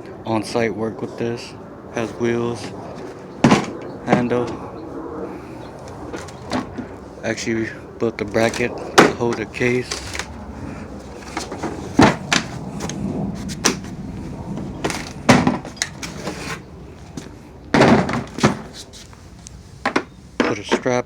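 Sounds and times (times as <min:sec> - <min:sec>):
scraping clunk: 0:02.6 - 0:04.6, 0:11.0 - 0:19.0
toolbox clunks and knocks: 0:03.4 - 0:04.3, 0:11.2 - 0:13.9, 0:14.8 - 0:16.6, 0:17.8 - 0:18.8.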